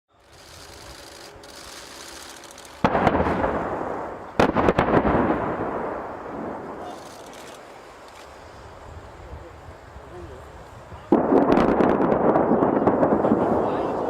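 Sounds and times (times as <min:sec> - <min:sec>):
heavy explosion blasts: 0:02.8 - 0:07.0, 0:11.1 - 0:14.0.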